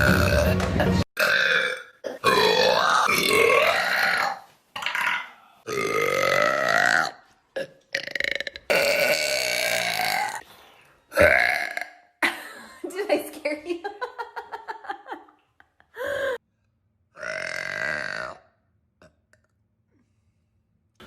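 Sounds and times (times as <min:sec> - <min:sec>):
person burping: 0:00.0 - 0:00.6, 0:01.2 - 0:10.4, 0:11.1 - 0:12.2, 0:17.2 - 0:19.5.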